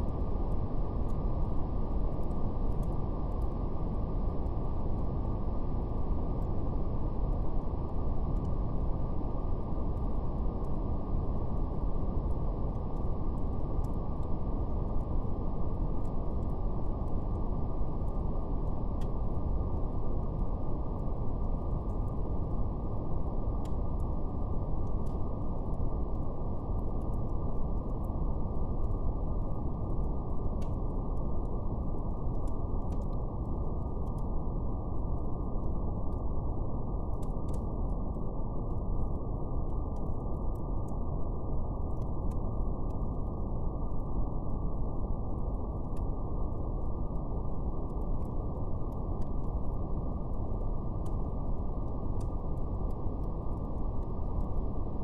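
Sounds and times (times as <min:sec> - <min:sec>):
fire crackling: 0:41.3 - 0:55.0.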